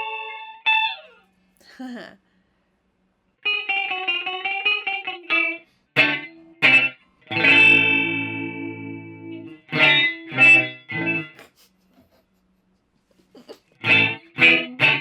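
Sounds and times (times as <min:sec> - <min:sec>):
electric guitar chord stabs: 0:03.5 - 0:11.4, 0:13.8 - 0:15.0.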